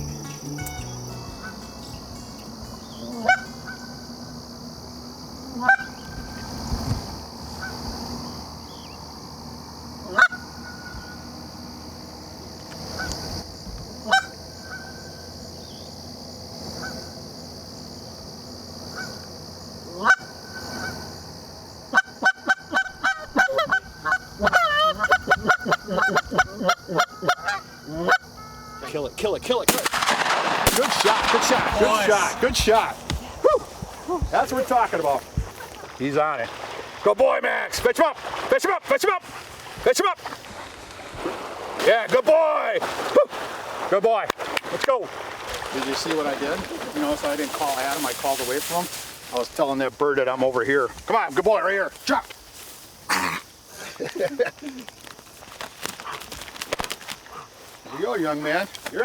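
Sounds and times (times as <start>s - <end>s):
goose honking: 0.0s - 4.0s, 5.6s - 6.0s, 21.9s - 29.0s, 31.0s - 33.0s
goose call honks and clucks: 3.0s - 3.9s, 5.6s - 6.0s, 10.0s - 11.2s, 14.0s - 15.0s, 19.9s - 21.0s, 21.9s - 29.0s.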